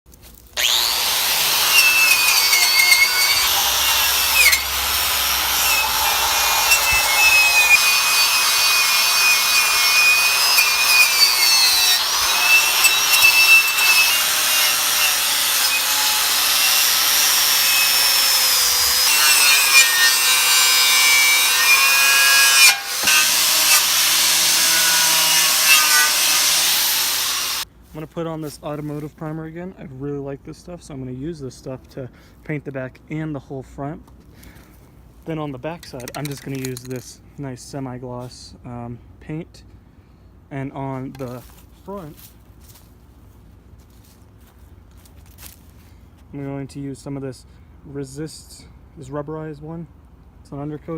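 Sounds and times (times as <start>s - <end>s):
power tool rasping on steel: 0.6s - 27.6s, 35.8s - 37.0s.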